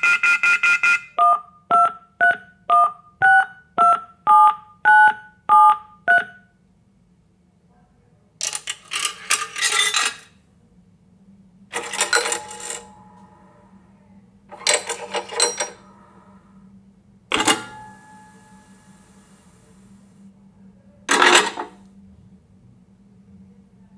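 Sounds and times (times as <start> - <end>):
touch-tone keypad beeps: 0.0 - 6.5
coins clattering in payphone: 8.4 - 10.4, 11.8 - 13.0, 14.6 - 15.9, 21.1 - 21.8.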